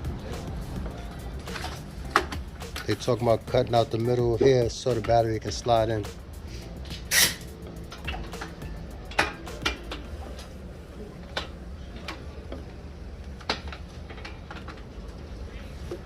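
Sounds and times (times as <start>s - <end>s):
steady low hum: 0.0s - 16.0s
tools and bike parts clinking: 0.8s - 5.6s, 6.8s - 10.5s, 13.3s - 15.2s.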